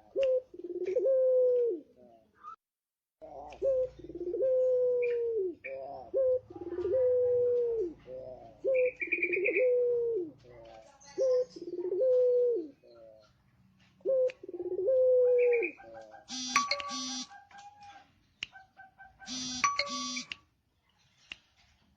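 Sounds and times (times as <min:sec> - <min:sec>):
dove cooing: 0:00.0 - 0:02.5, 0:03.2 - 0:20.2
small bird trill: 0:15.4 - 0:20.5.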